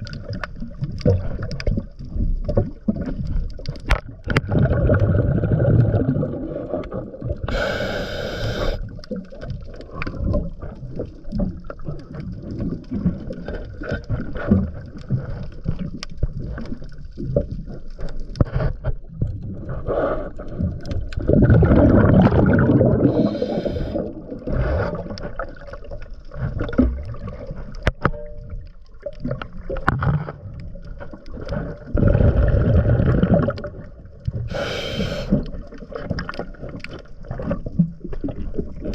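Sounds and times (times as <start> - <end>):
exhaled bubbles rumbling: 0.0 - 38.9
diver inhaling through regulator: 7.5 - 8.9, 22.9 - 25.0, 34.5 - 35.4.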